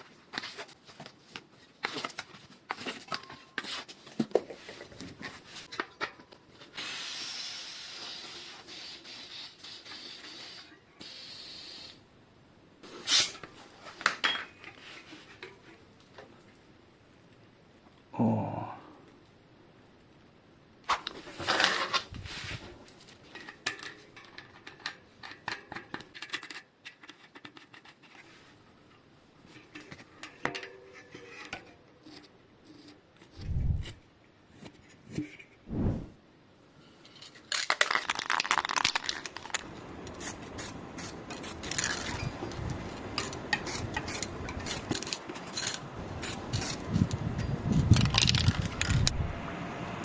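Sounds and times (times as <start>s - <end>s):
low thumps: 35.7s - 36.2s
rustling noise and rapid clicks: 46.5s - 49.2s.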